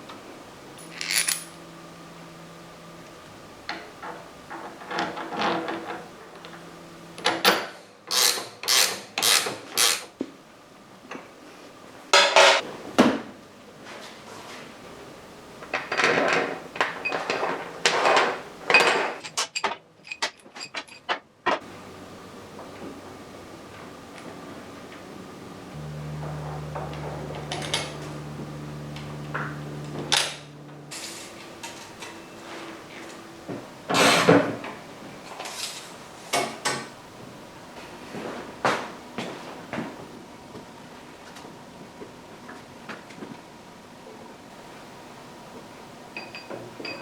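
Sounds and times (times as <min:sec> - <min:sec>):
metal tools clinking and knocking: 0:00.8 - 0:01.6.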